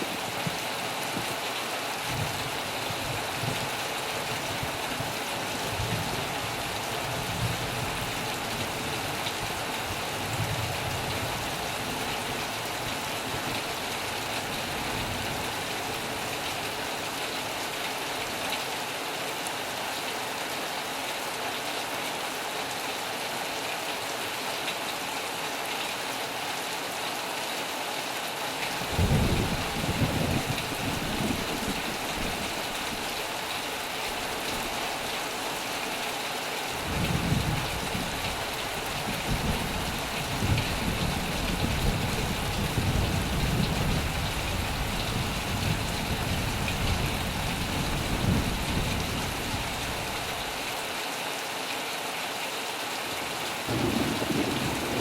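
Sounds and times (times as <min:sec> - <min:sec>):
heavy rain: 0:00.0 - 0:55.0.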